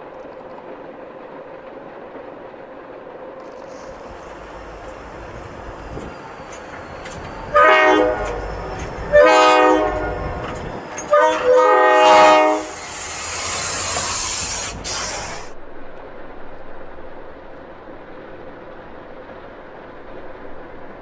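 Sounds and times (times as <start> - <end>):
rushing hiss: 3.4 - 15.6
train air horn blasts: 7.4 - 15.5.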